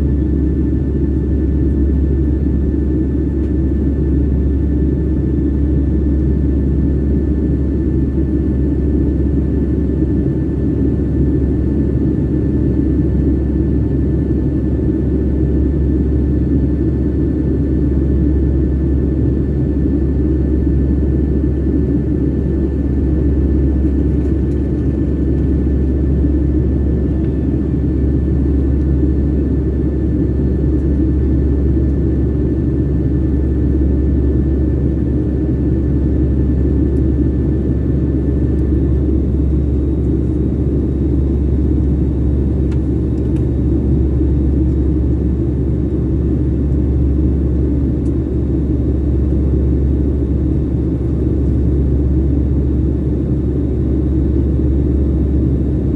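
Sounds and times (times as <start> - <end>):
jet engines and airflow rumble: 0.0 - 55.9.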